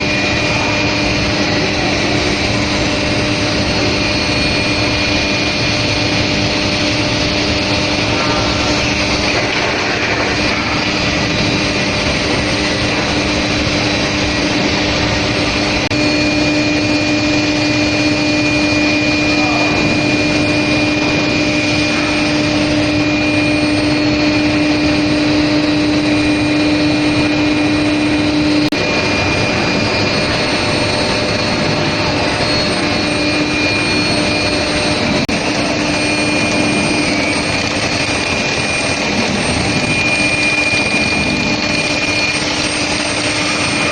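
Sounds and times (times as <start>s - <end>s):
high machine whine: 0.0s - 43.9s
industrial machine hum: 0.0s - 43.9s.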